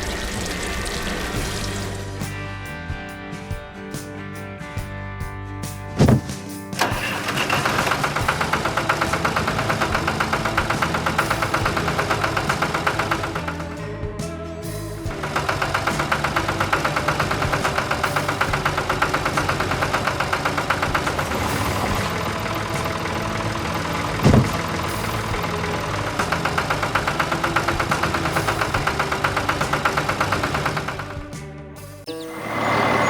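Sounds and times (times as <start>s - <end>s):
short low thump: 6.0s - 6.3s
cartoon farm vehicle engine chugging: 6.8s - 13.8s, 15.0s - 31.3s.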